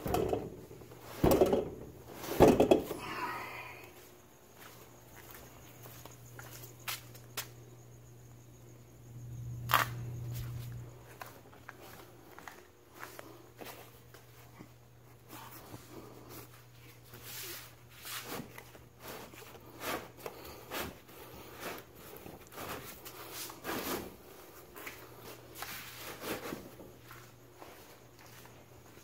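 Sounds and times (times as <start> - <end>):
steady low hum: 0.0 - 29.0
scuffing and scraping: 4.0 - 7.6, 9.7 - 29.0.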